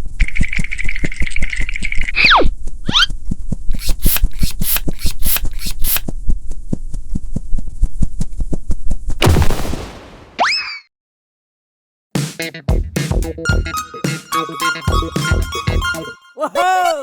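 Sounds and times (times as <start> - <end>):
short hissy swishes: 3.8 - 6.0.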